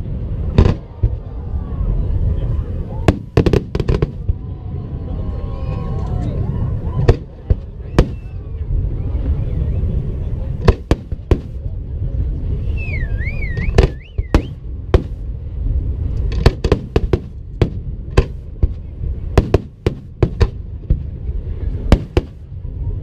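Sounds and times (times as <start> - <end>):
low rumble: 0.0 - 23.0
whistling firework: 0.2 - 11.6, 12.4 - 15.2, 19.3 - 23.0
fireworks bangs: 0.4 - 1.3, 3.0 - 4.4, 6.9 - 8.6, 10.6 - 11.7, 13.4 - 15.3, 16.2 - 22.5.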